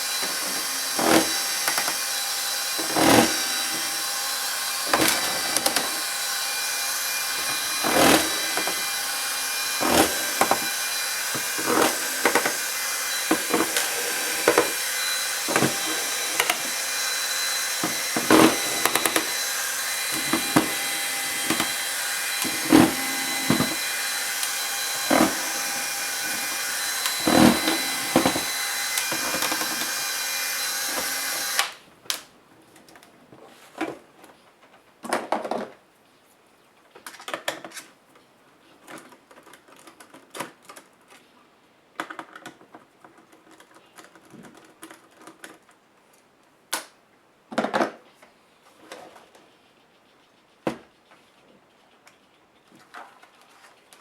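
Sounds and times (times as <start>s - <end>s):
small motor whirring: 0.0s - 31.8s.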